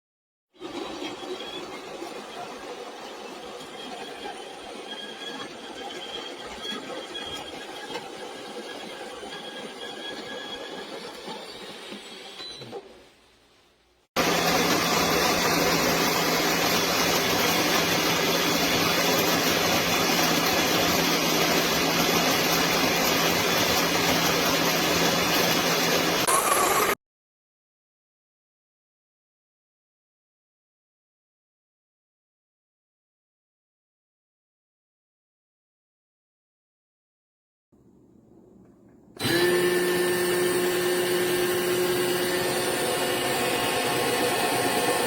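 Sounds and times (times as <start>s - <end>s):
coffee grinder grinding: 14.2s - 27.0s, 39.2s - 45.0s.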